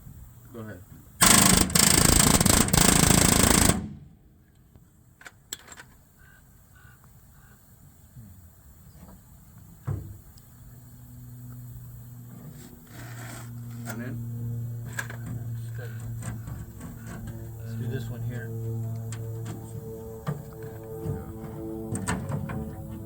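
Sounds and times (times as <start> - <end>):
pneumatic rivet gun rattling: 1.2 - 4.0.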